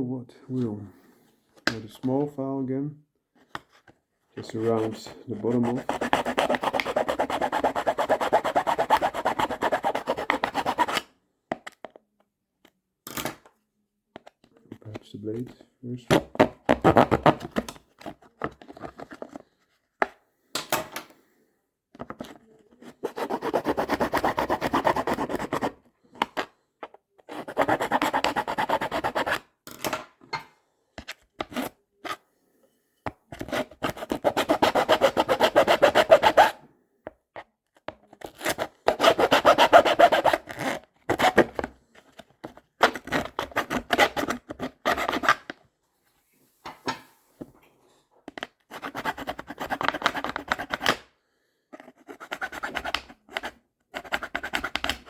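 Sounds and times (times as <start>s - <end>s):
hand file rasping: 4.5s - 11.0s, 22.9s - 25.7s, 27.3s - 29.4s, 33.4s - 36.6s, 38.5s - 41.4s.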